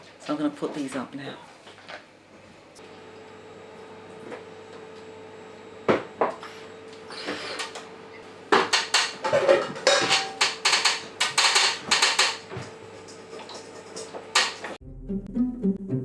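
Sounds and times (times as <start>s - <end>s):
curtain fittings clicking and clattering: 8.7s - 9.2s, 9.9s - 12.5s, 14.4s - 14.7s.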